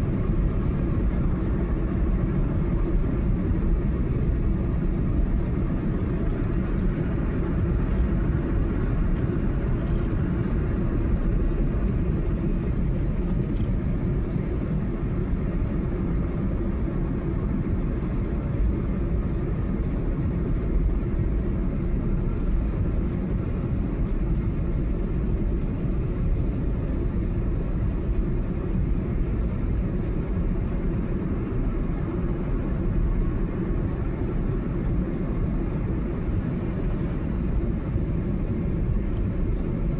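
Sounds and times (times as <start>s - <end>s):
car road and engine rumble: 0.0s - 39.9s.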